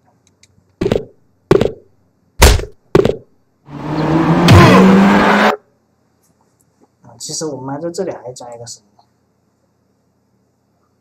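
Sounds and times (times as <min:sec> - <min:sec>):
car driving sound effect: 0:03.0 - 0:05.6.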